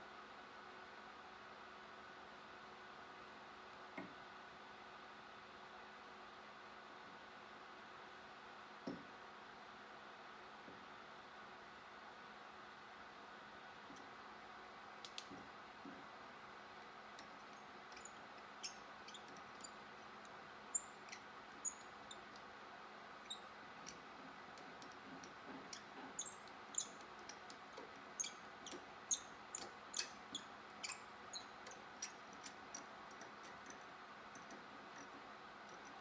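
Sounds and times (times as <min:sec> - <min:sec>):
faint steady hum: 0:00.0 - 0:36.0
small metal parts clicking: 0:24.6 - 0:36.0.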